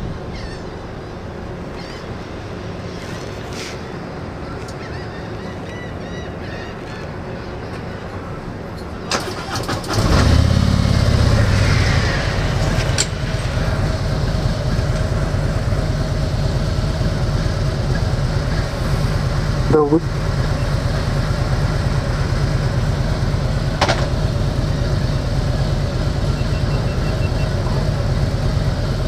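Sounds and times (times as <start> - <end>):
car engine starting and idling: 9.1 - 29.0
low steady hum: 10.5 - 29.0.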